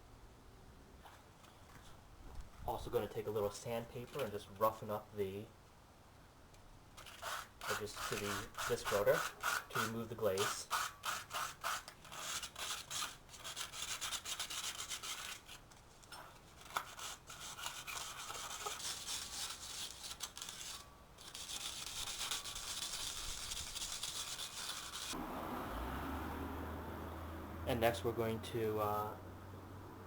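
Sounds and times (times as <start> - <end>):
sandpaper rasping on metal disc: 7.0 - 25.2.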